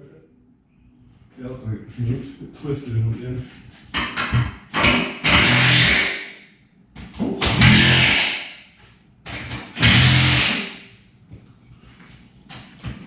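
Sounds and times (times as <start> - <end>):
power tool bursts: 4.8 - 6.3, 7.4 - 8.6, 9.7 - 10.8.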